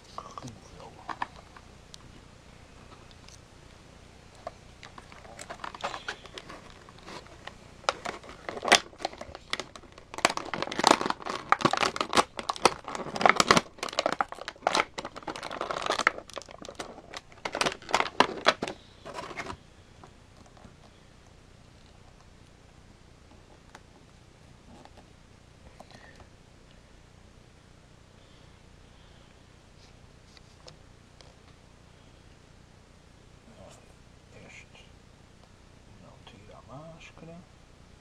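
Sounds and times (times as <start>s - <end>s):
plastic packaging crinkling: 4.4s - 19.6s.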